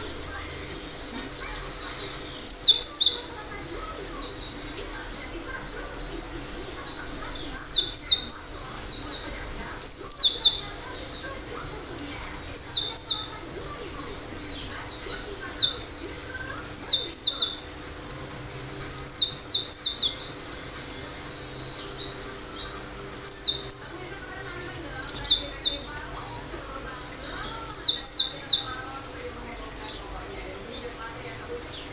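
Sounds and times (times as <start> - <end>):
bird singing whistled notes: 1.8 - 3.5, 7.2 - 10.7, 12.4 - 13.3, 14.3 - 17.7, 18.9 - 24.1, 25.0 - 25.9, 26.6 - 28.9.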